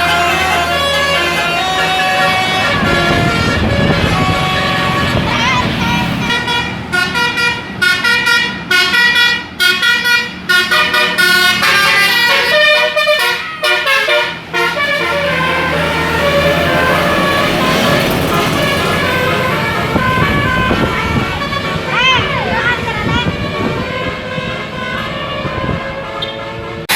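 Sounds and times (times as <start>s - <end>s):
steady low rumble: 0.0s - 7.3s
bus multi-tone horn melody: 0.0s - 26.9s.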